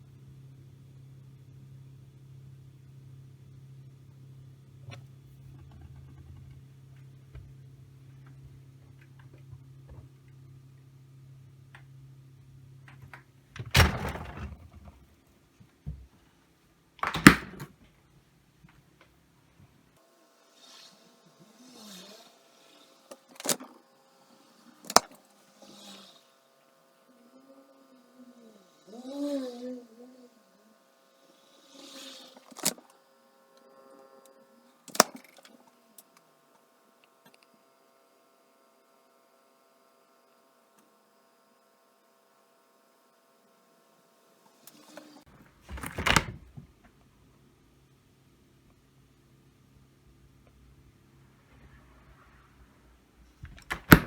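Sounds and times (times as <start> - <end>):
refrigerator door shut with thud: 13.6 - 14.8.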